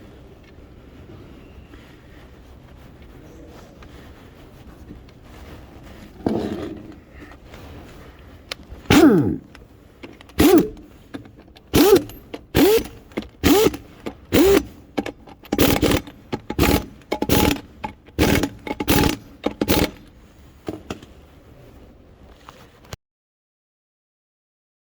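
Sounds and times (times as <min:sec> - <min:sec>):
impact wrench whirring bursts: 0:08.9 - 0:20.1.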